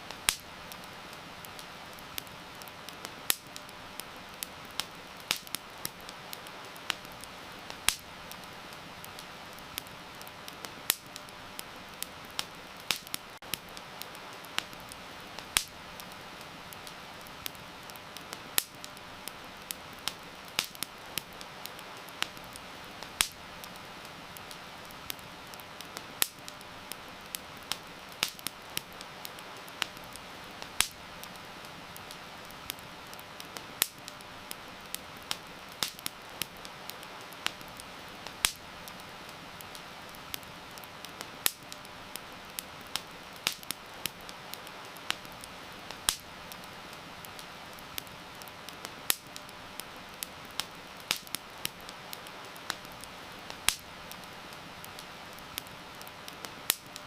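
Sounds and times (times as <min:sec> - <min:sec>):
campfire crackling and popping: 0:00.0 - 0:57.0
heavy rain hissing: 0:00.0 - 0:57.0.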